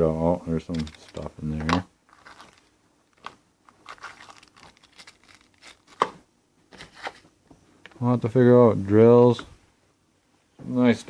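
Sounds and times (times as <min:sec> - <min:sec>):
packaging rustling: 0:00.7 - 0:07.3.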